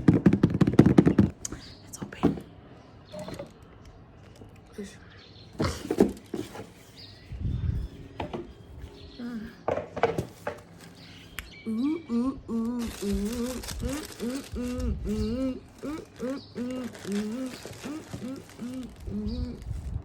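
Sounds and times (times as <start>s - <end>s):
woman humming: 9.1s - 9.7s, 11.6s - 19.8s
parcel packaging rustling: 12.7s - 20.0s.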